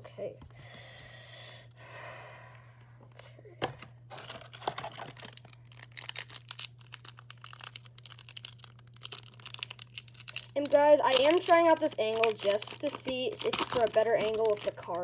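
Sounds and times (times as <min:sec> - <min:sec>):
foil wrapper tearing and crinkling: 0:04.1 - 0:15.0.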